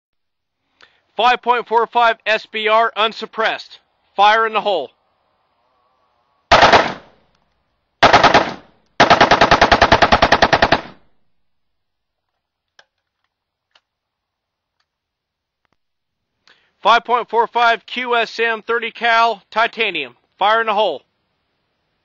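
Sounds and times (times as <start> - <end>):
automatic rifle bursts: 6.5 - 7.1, 8.0 - 11.0.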